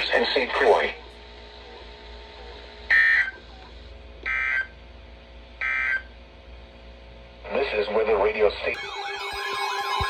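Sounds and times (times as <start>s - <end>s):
digital warbling data tones: 8.8s - 10.0s.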